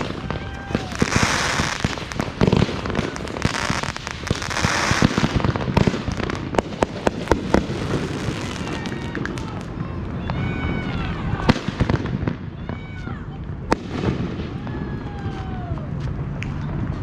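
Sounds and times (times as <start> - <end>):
hissing crackling bursts: 0.0 - 14.7
fireworks bangs and pops: 0.0 - 17.0.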